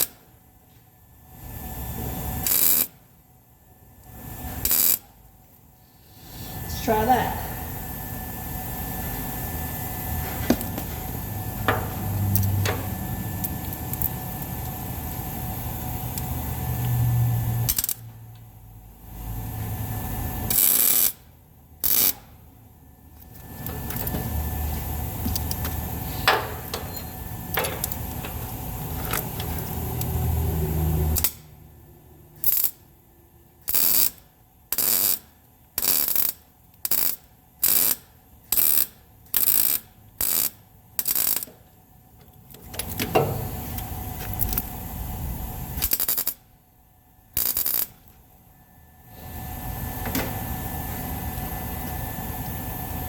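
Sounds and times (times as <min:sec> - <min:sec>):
electric welding arc crackling: 0:00.0 - 0:00.2, 0:02.3 - 0:03.0, 0:04.2 - 0:05.2, 0:08.4 - 0:18.2, 0:20.0 - 0:22.4, 0:32.4 - 0:32.8, 0:33.6 - 0:41.6, 0:42.9 - 0:46.5, 0:47.3 - 0:48.2.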